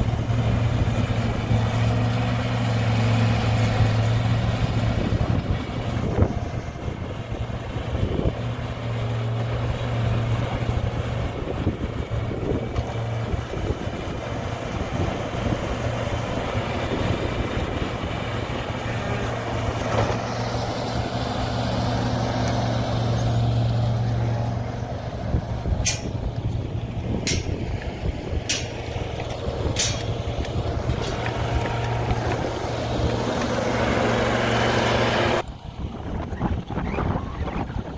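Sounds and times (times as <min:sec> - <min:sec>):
farm vehicle engine running: 0:00.0 - 0:37.9
sharp clicks: 0:25.8 - 0:26.6, 0:27.3 - 0:27.9, 0:28.5 - 0:32.4.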